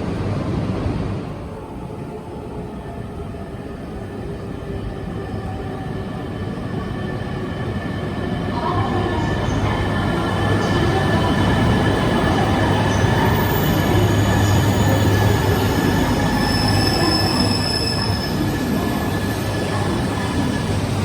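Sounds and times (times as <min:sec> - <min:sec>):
train rumbling: 0:00.0 - 0:21.0
wheel squeal: 0:15.4 - 0:19.0.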